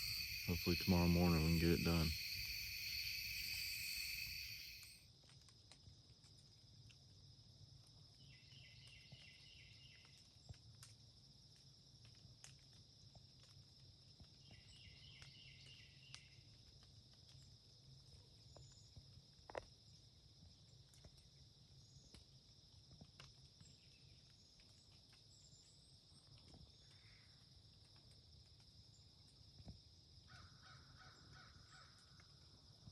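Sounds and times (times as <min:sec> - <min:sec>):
crickets chirping: 0:00.0 - 0:05.0.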